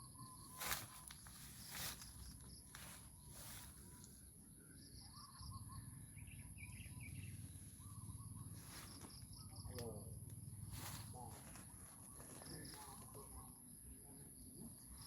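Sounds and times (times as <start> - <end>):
small bird chirps: 0.0 - 15.0
insect drone: 6.6 - 15.0.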